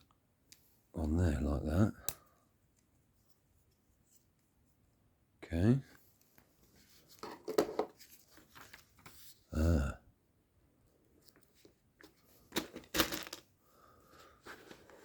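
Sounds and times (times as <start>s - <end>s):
person humming: 9.5s - 10.0s.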